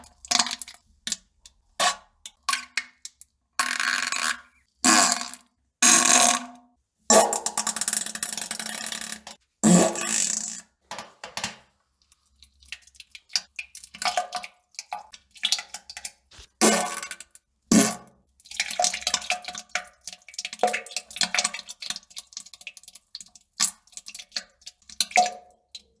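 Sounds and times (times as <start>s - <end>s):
wet sputtering fart sounds: 8.6s - 10.7s.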